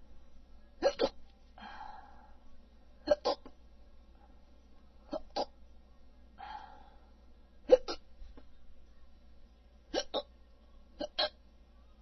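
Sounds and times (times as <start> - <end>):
person hiccuping: 0.8 - 1.2, 3.1 - 3.5, 5.1 - 5.5, 7.7 - 8.0, 10.0 - 10.3, 11.0 - 11.4
soft breathy sound: 1.4 - 2.9, 5.9 - 7.4.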